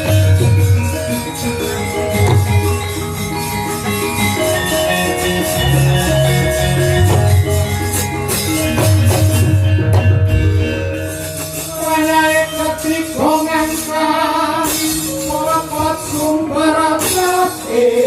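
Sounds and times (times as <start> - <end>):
drum: 0.0 - 4.4, 5.6 - 12.4
gamelan metallophones and gongs: 0.0 - 18.0.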